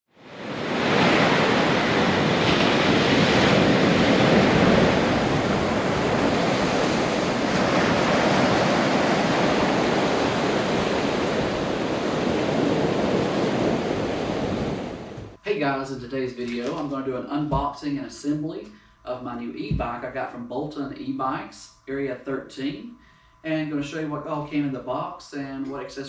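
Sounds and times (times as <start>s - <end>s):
steady rushing noise: 0.2s - 16.0s.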